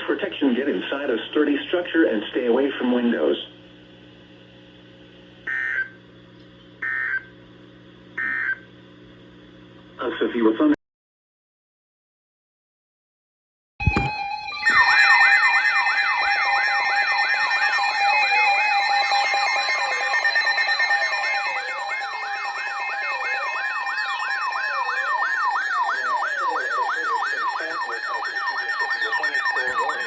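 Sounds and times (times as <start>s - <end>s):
constant alert tones: 13.8s - 30.0s
fast rising and falling siren: 13.8s - 30.0s
deep wailing siren sweeps: 14.0s - 30.0s.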